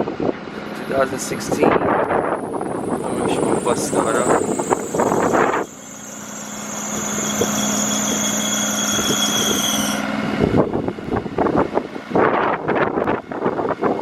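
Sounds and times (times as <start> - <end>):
low hum: 0.1 - 8.7
high-pitched whine: 0.3 - 10.9.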